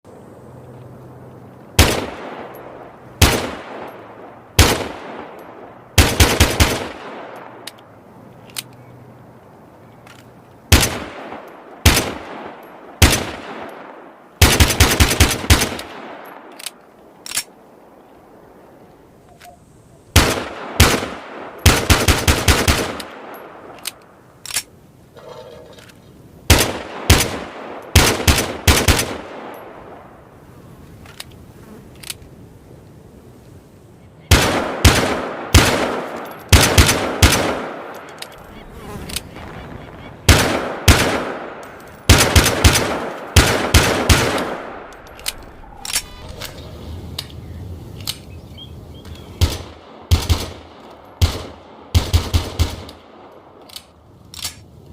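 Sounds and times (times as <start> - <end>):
pistol gunshots: 1.8 - 7.7, 10.7 - 16.7, 20.2 - 24.0, 26.5 - 30.1, 34.3 - 46.1, 49.4 - 53.4.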